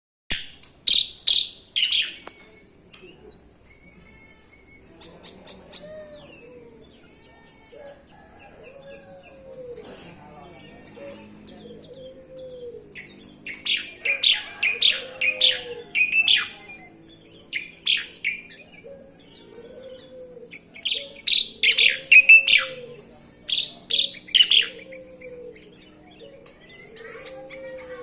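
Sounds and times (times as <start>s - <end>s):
bird chirping: 0.3s - 7.7s, 10.4s - 27.5s.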